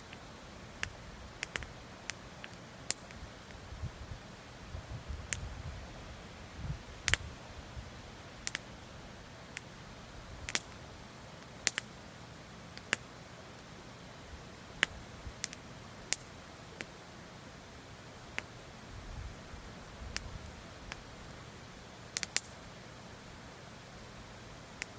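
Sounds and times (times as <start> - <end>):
wood fire crackling: 0.0 - 17.0, 17.6 - 23.3.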